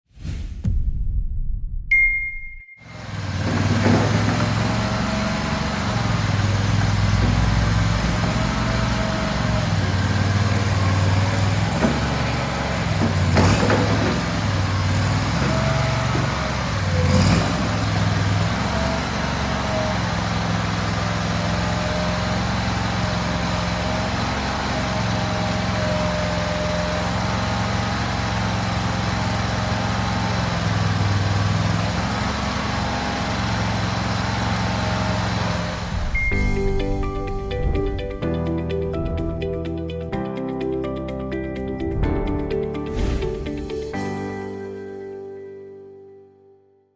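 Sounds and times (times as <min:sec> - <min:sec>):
small gasoline engine running: 0:02.8 - 0:40.0.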